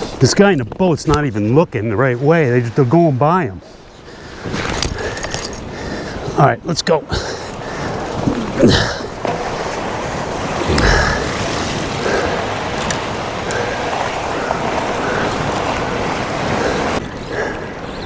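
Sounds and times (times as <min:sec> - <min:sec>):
surf breaking on a beach: 0:07.0 - 0:18.0.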